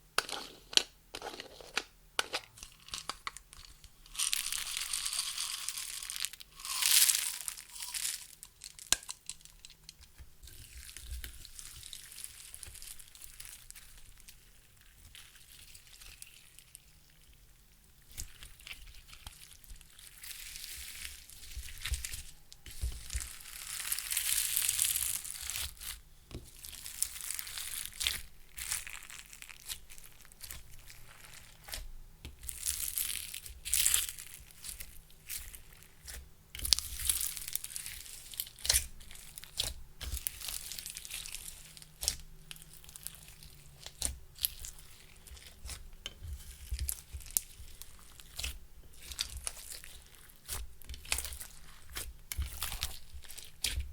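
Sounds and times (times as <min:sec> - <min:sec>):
slime squished by hand: 0:18.1 - 0:53.9.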